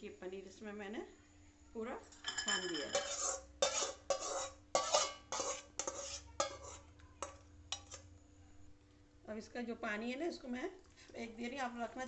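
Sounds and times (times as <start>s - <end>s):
metal utensils clattering: 2.2s - 6.6s.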